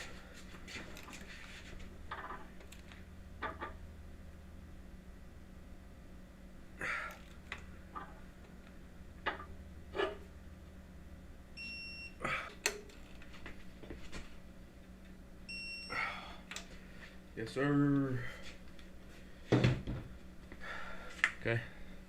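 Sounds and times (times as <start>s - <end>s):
electronic torque wrench beeping: 11.6s - 12.2s.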